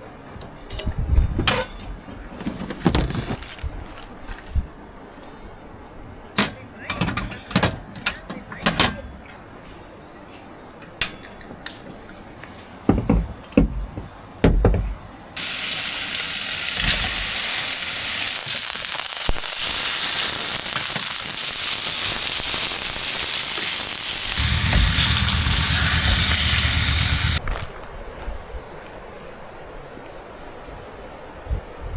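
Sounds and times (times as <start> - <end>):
burgers sizzling on hot surface: 15.4 - 27.4
low rumble: 24.4 - 27.4.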